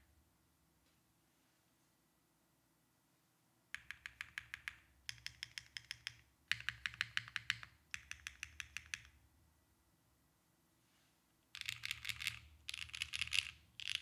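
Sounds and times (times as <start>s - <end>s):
typing on mechanical keyboard: 3.8s - 9.1s, 11.6s - 14.0s.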